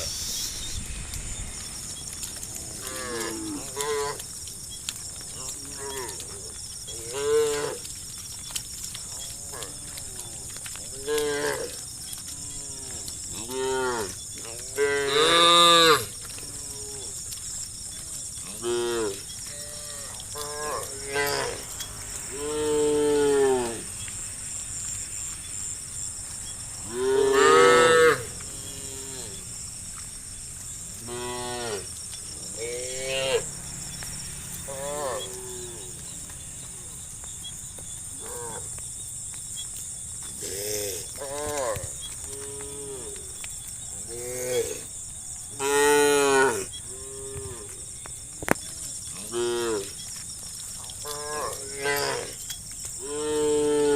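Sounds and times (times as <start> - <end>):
steady high-pitched hiss: 0.0 - 53.9
cattle mooing: 2.3 - 4.2.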